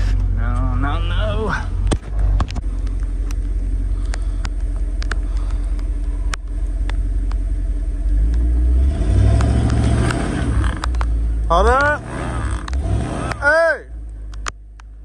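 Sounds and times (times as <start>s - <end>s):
truck engine running under load: 0.0s - 13.4s
sharp clicks: 1.8s - 7.4s, 9.3s - 13.4s, 14.0s - 14.9s.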